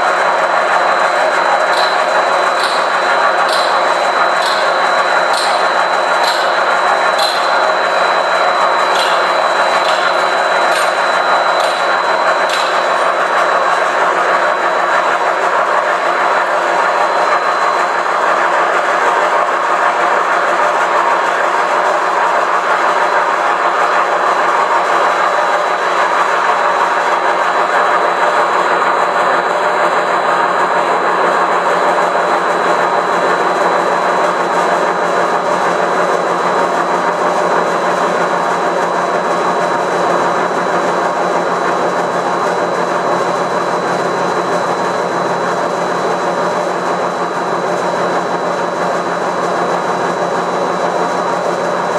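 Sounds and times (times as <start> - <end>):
thin high whine: 0.0 - 18.8
lathe machining noise: 0.0 - 51.9.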